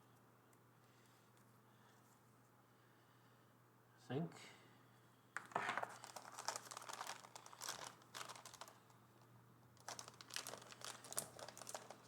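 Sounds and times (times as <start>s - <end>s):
plastic wrapping crinkling: 5.4s - 12.0s.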